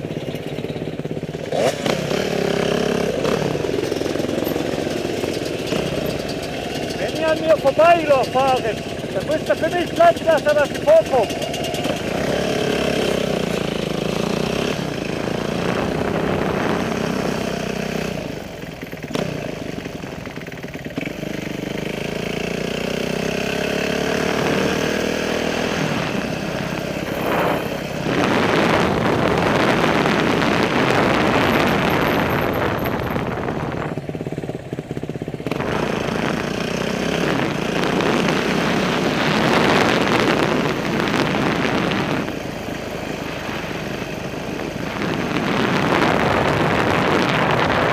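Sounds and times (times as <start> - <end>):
motorcycle engine revving: 0.0 - 47.9
loud even rushing noise: 25.6 - 34.0.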